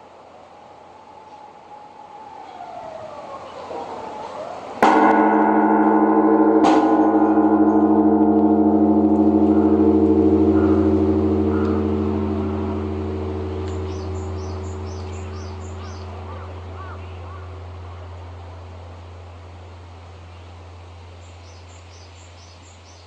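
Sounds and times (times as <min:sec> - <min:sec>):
large temple bell ringing: 0:04.8 - 0:21.6
birds chirping faintly: 0:04.8 - 0:23.0.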